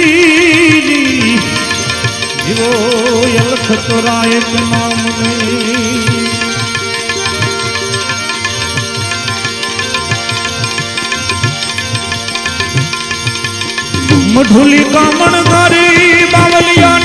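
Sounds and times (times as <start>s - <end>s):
held melodic tones: 0.0s - 17.0s
hand drum beat: 12.6s - 17.0s.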